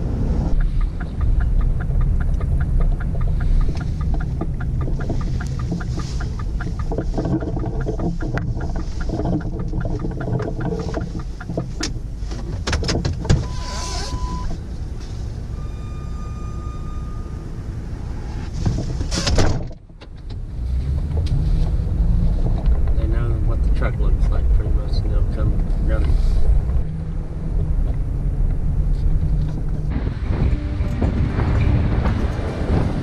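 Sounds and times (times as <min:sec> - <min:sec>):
pickup truck engine rumble: 0:00.0 - 0:33.0
regular ticks: 0:00.4 - 0:13.3
sharp clicks: 0:00.5 - 0:12.0
short steady tones: 0:15.5 - 0:18.5.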